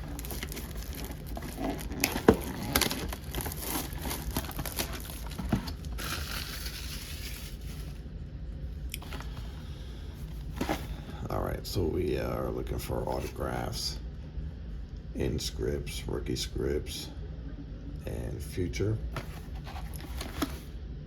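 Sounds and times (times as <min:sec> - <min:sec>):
plastic shrink-wrap tearing and crinkling: 0:00.0 - 0:08.0.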